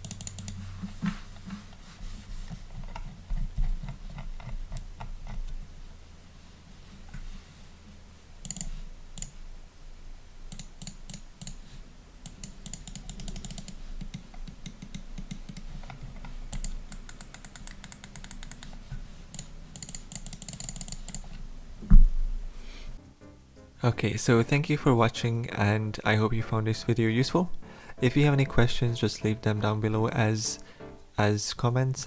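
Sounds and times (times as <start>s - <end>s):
computer mouse clicking: 0.0s - 0.6s, 8.4s - 9.4s, 10.5s - 11.6s, 12.2s - 21.4s.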